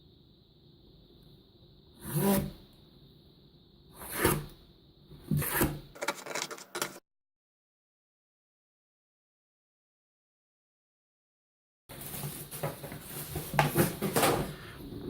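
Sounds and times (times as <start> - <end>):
cardboard rasping cut: 2.0 - 2.6, 4.0 - 4.5, 5.3 - 5.8.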